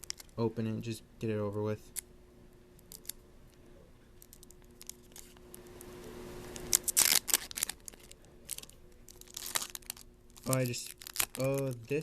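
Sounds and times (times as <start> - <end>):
foil tearing: 6.6 - 12.0
foil wrapper rustling: 6.6 - 12.0.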